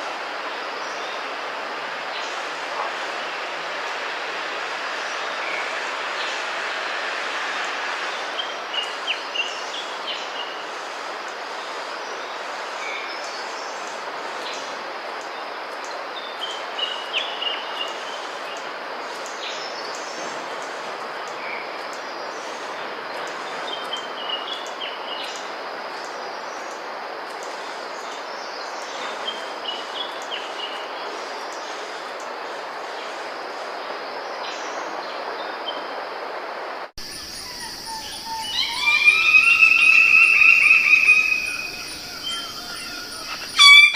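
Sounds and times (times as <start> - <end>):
steady background hiss: 0.0 - 43.9
bird calling high notes: 37.4 - 43.9.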